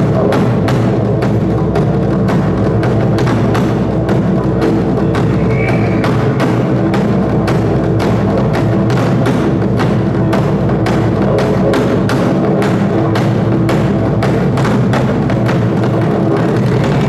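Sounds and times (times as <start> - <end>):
sharp woody percussion strikes: 0.0 - 17.0
sustained low tones: 4.4 - 8.9.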